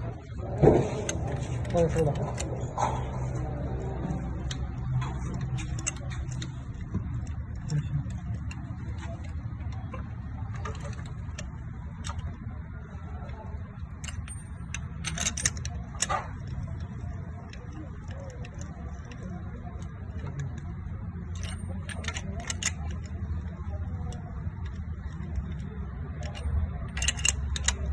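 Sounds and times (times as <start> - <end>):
light metallic rattles: 13.3 - 27.9.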